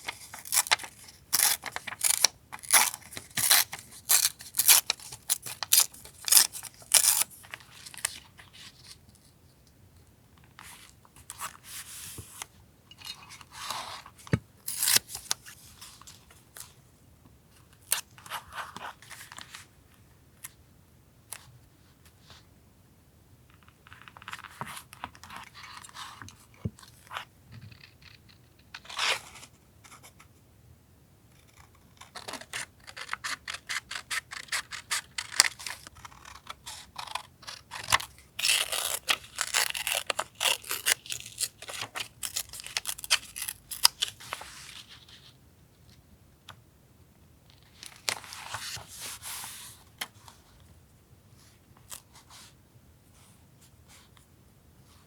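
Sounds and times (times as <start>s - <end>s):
paper rustling and tearing: 0.0s - 8.0s.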